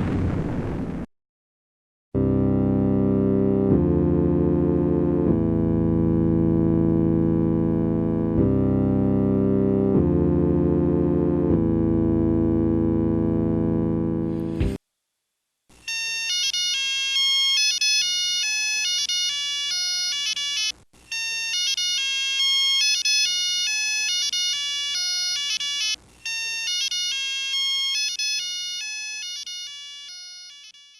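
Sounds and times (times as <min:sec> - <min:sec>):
alarm clock chiming melody: 0:15.9 - 0:30.9.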